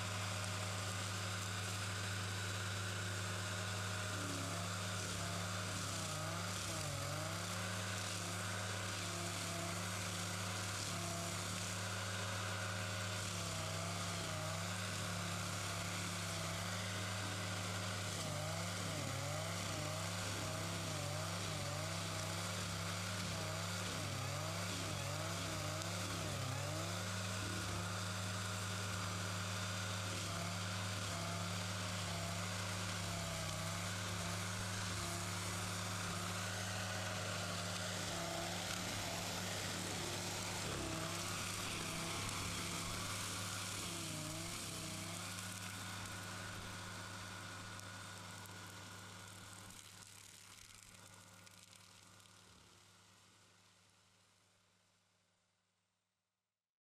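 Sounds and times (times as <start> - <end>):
heavy machine humming: 12.5 - 49.0.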